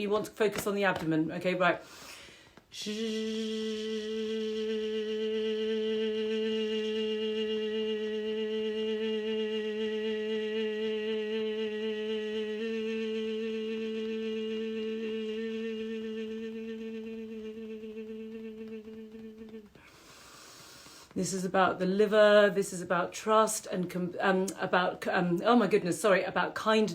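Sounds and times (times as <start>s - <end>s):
long low held note: 2.8s - 19.5s.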